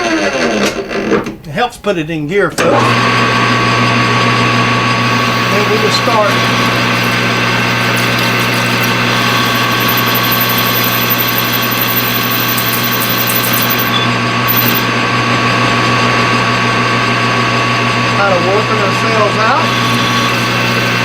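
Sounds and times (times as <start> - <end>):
metal lathe humming: 2.8 - 21.0
thin high whine: 5.0 - 15.1
light ticking: 5.5 - 14.9.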